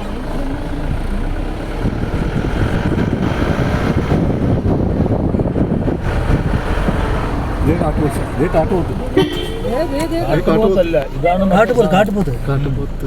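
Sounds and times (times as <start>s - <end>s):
vehicle rough rumble: 0.0s - 13.0s
wind buffeting microphone: 0.5s - 10.4s.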